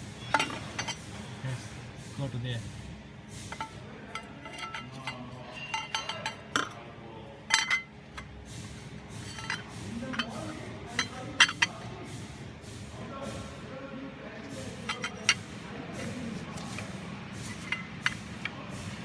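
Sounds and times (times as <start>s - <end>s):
metal tools clinking: 0.2s - 1.0s, 3.5s - 6.8s, 7.5s - 8.3s, 9.1s - 11.8s, 14.8s - 16.8s, 17.4s - 18.5s.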